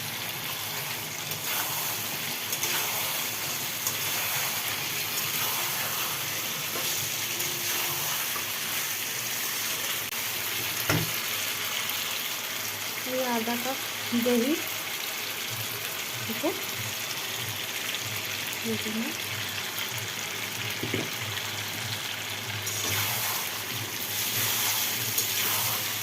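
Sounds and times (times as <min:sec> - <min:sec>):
chicken sizzling in a pan: 0:00.0 - 0:26.0.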